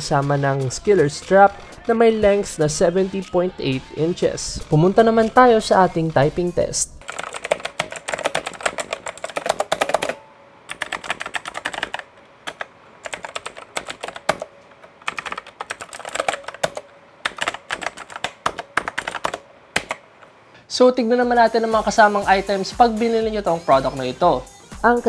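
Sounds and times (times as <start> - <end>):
mechanical keyboard typing: 7.0 - 20.0.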